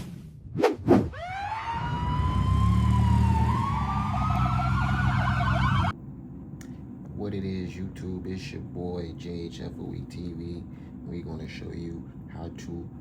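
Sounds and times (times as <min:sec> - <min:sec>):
siren-like wail: 0:01.1 - 0:06.0
steady low hum: 0:05.8 - 0:13.0.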